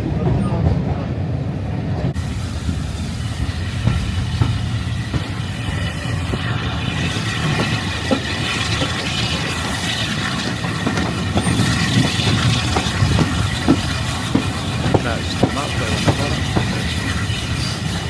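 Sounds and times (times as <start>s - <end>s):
railway carriage rumble: 0.0s - 18.0s.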